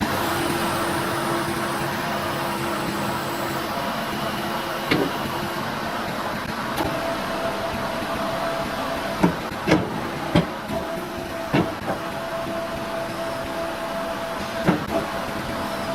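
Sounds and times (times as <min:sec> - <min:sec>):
skid steer machine drone: 0:00.0 - 0:15.9
sharp knocks: 0:09.2 - 0:10.6, 0:11.5 - 0:12.1.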